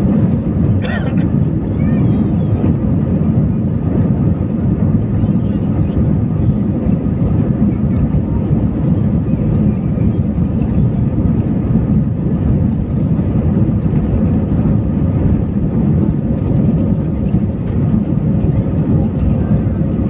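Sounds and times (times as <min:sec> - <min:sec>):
aircraft engines rumbling in cabin: 0:00.0 - 0:20.0.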